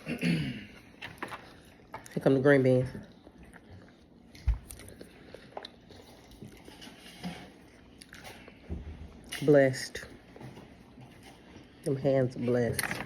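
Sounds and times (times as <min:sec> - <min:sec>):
person chewing: 0:03.0 - 0:09.2.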